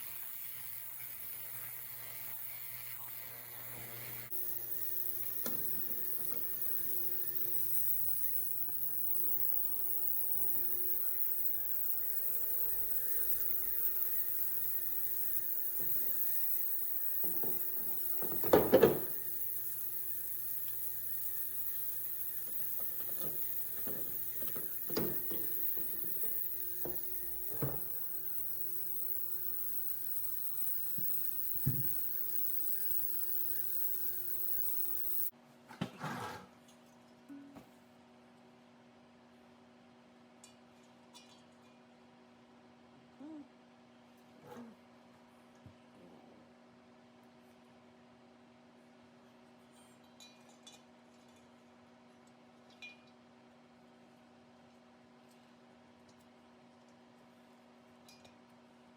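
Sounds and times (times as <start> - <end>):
electrical hum: 0.0 - 35.3.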